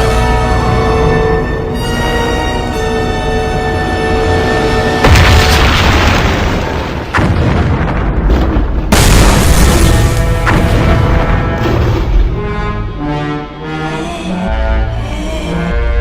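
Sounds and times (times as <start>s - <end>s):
orchestral film score: 0.0s - 16.0s
deep booms: 4.8s - 13.0s.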